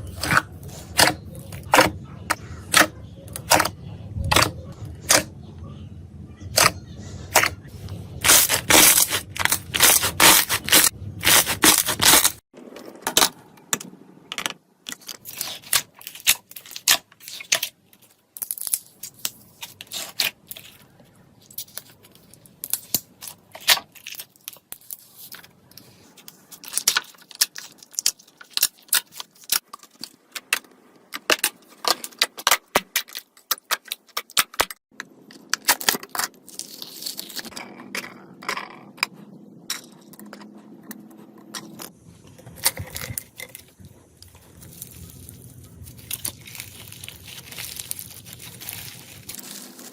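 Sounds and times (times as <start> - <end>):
slime crackling and popping: 44.2 - 49.9.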